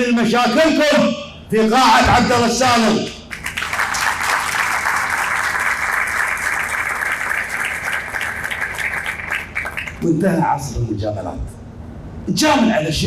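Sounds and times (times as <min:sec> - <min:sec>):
audience applauding: 0:03.3 - 0:10.0.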